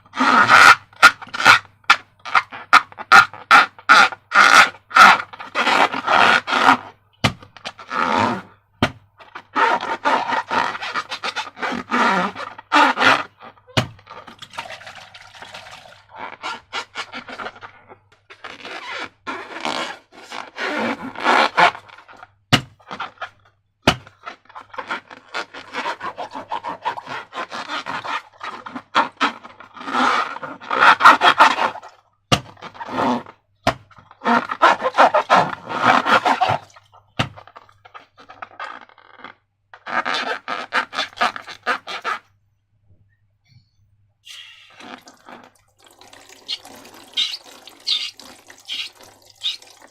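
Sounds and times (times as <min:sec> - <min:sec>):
squishing slime and balloons: 0:44.3 - 0:49.9.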